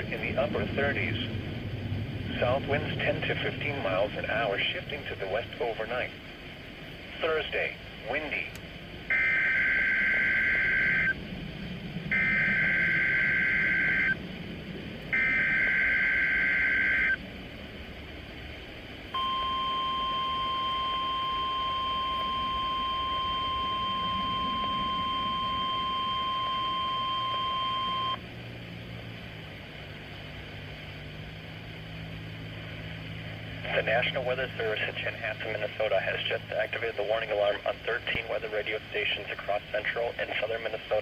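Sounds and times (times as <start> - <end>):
raspy digital data tones: 9.1 - 11.2, 12.1 - 14.2, 15.2 - 17.2, 19.2 - 28.2
weather radio alarm tone: 9.1 - 11.2, 12.1 - 14.2, 15.1 - 17.2, 19.2 - 28.2, 33.6 - 41.0.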